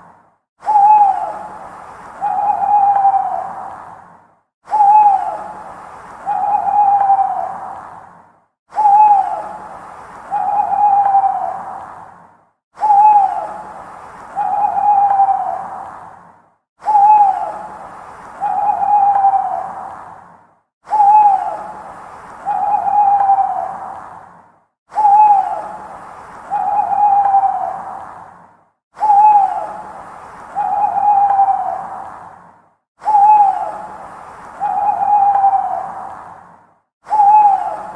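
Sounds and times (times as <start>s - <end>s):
owl hooting: 0.6s - 3.8s, 4.7s - 7.8s, 8.7s - 11.8s, 12.8s - 15.9s, 16.8s - 20.0s, 20.9s - 24.0s, 24.9s - 28.0s, 29.0s - 32.1s, 33.0s - 36.1s, 37.1s - 37.9s.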